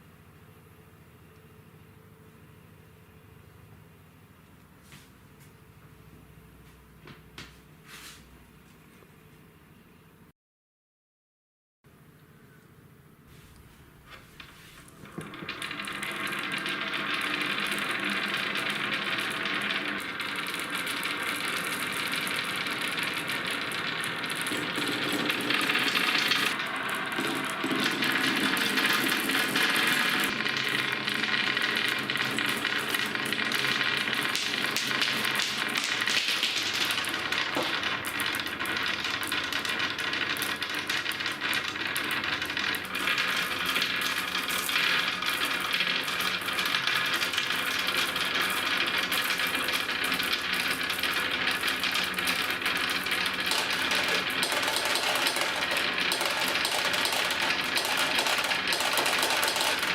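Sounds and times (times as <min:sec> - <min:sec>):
marbles rattling down wooden slope: 0:14.4 - 0:59.9.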